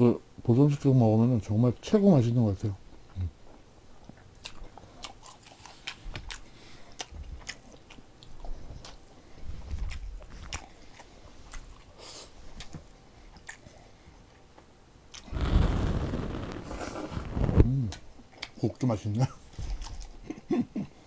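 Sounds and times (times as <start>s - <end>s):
man chewing food: 2.9s - 14.7s.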